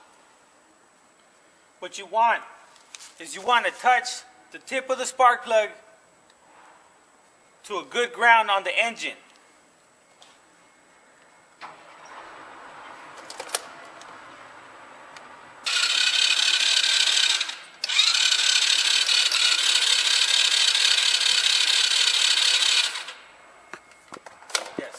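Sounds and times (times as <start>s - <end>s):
electric starter whirring: 11.6s - 23.4s.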